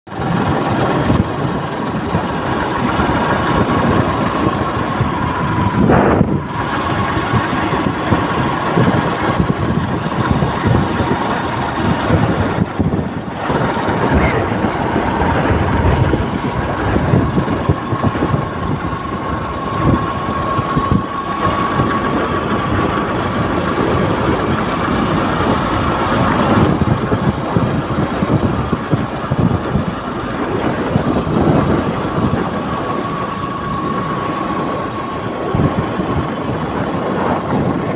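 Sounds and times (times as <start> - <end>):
engine running with rattle: 0.1 - 37.9
thin steady whine: 1.6 - 37.4.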